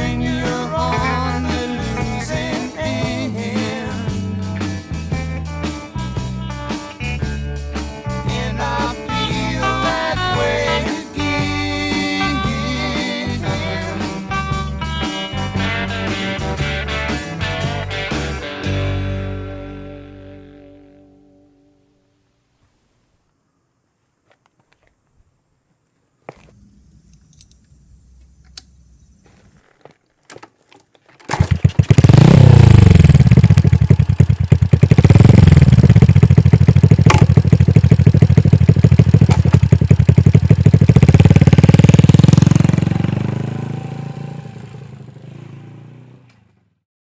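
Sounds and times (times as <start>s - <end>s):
motorcycle engine revving: 31.3s - 46.8s.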